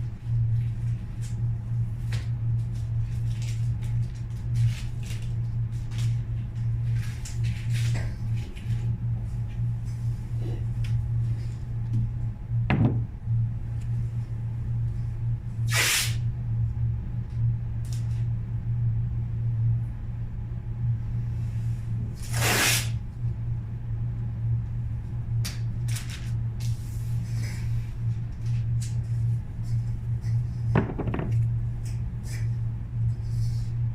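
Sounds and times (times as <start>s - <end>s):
low workshop hum: 0.0s - 33.9s
air hissing: 15.7s - 16.2s, 22.3s - 23.0s.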